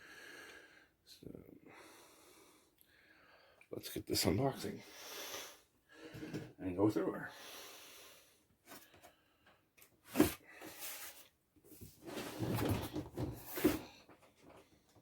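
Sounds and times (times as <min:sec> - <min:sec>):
cardboard scraping and rustling: 0:10.0 - 0:14.0.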